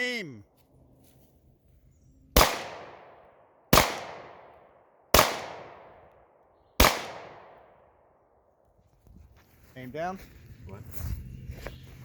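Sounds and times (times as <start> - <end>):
gunshots with echo: 2.4 - 6.0, 6.8 - 7.9.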